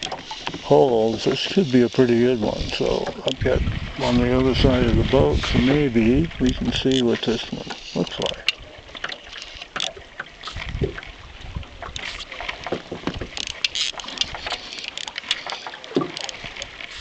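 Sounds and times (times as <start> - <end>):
boat knocks and rattles: 0.0 - 17.0
water splashing: 0.0 - 17.0
dull low thumps: 2.4 - 6.9, 10.6 - 11.9.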